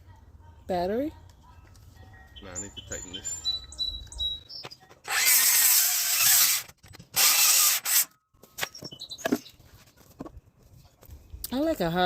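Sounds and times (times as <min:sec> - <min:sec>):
cordless drill drilling into wood: 0:05.1 - 0:08.1.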